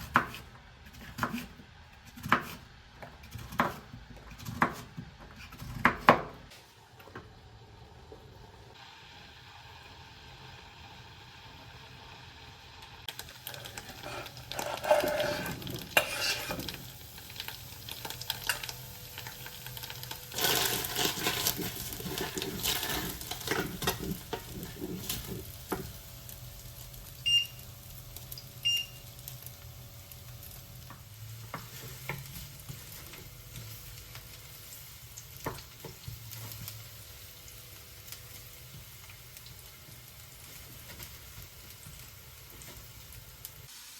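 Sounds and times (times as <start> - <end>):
food sizzling in a pan: 7.4 - 43.9
utensils scraping and clattering: 13.5 - 16.8, 20.3 - 25.5.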